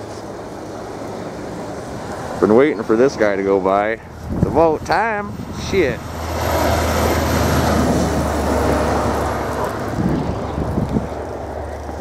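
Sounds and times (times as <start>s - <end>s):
snowmobile engine passing: 0.0s - 12.0s.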